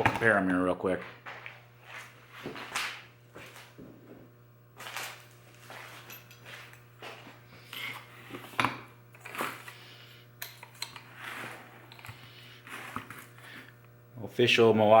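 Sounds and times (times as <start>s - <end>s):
low mains hum: 0.0s - 15.0s.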